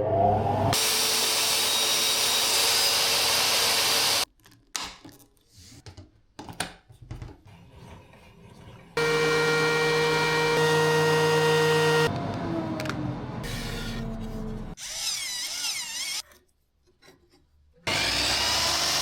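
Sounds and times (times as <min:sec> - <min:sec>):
power tool cutting wood: 0:00.7 - 0:04.3, 0:09.0 - 0:16.2, 0:17.8 - 0:19.0.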